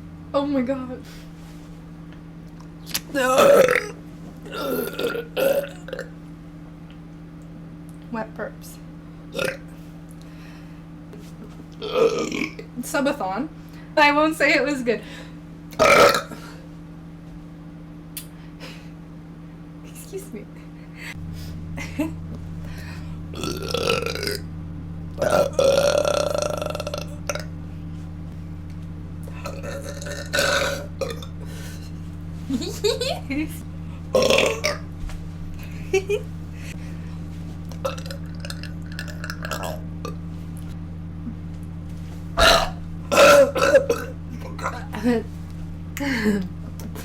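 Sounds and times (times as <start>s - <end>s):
person burping: 3.2s - 6.1s, 9.4s - 9.6s, 11.8s - 12.6s, 15.8s - 16.6s, 23.3s - 24.4s, 25.2s - 27.5s, 29.4s - 31.4s, 34.2s - 34.8s, 37.8s - 40.2s, 42.4s - 45.0s.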